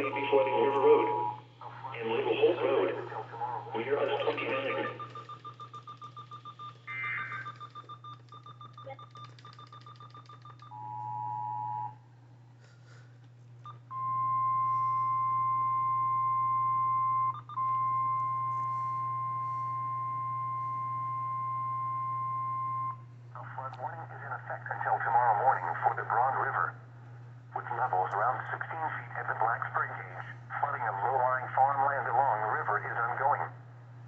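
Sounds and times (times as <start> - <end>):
steady warning alarm tone: 0.0 - 12.0, 13.7 - 23.1
rapid pulsing beep: 3.7 - 10.8.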